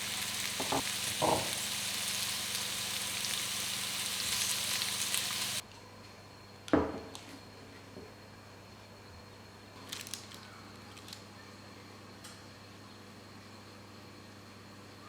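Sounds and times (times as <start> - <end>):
food sizzling in a frying pan: 0.0 - 5.6.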